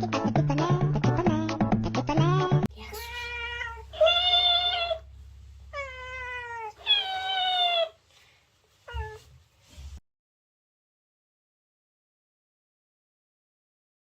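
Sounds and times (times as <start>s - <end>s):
cat meowing: 2.8s - 5.1s, 5.7s - 8.0s, 8.9s - 9.2s.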